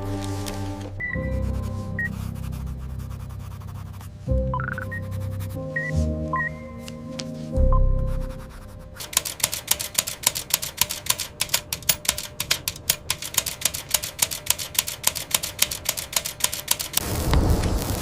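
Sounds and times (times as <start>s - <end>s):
telegraph key clicking: 9.0s - 17.0s.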